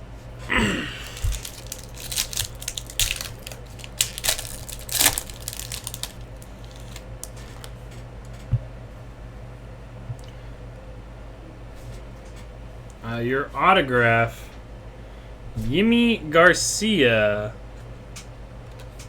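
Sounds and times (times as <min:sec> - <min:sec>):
wrapper crinkling and tearing: 0:00.6 - 0:07.7
cards being handled: 0:01.0 - 0:07.6.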